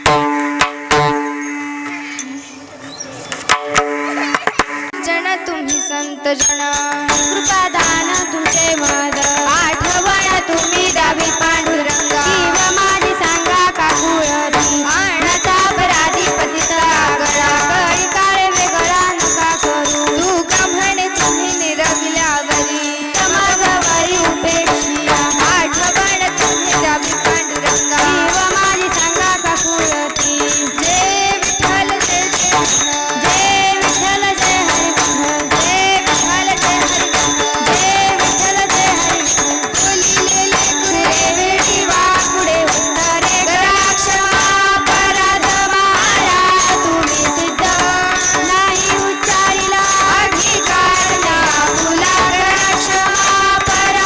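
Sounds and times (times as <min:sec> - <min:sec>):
metallic hand percussion: 0:00.0 - 0:02.4, 0:03.3 - 0:54.0.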